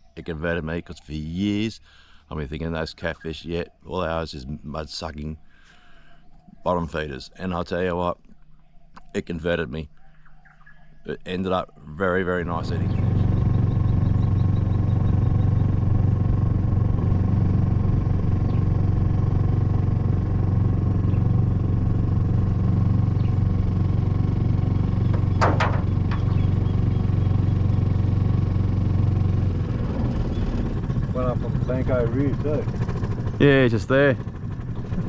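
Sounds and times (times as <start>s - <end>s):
outboard motor running: 12.1s - 35.0s.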